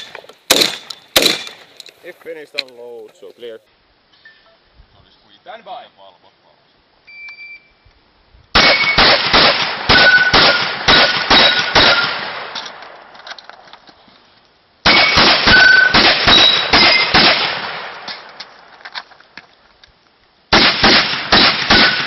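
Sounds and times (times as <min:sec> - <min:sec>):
shotgun shots: 0:00.0 - 0:01.7, 0:08.6 - 0:12.8, 0:14.8 - 0:18.3, 0:20.5 - 0:22.0.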